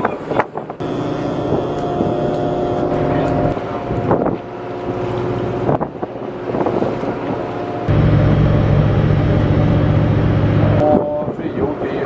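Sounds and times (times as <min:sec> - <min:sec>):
boat engine running: 0:00.0 - 0:11.9
wind-like rush: 0:03.1 - 0:12.0.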